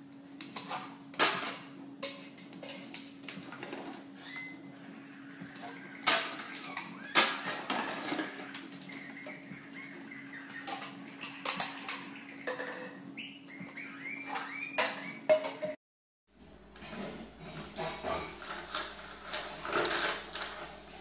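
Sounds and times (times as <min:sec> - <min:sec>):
parrot chirping: 0:04.2 - 0:15.3.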